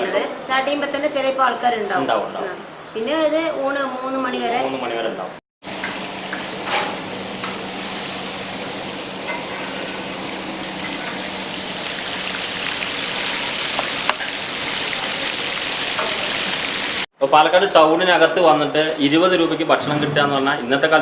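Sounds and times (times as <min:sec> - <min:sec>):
fish sizzling in hot oil: 0:05.6 - 0:17.1.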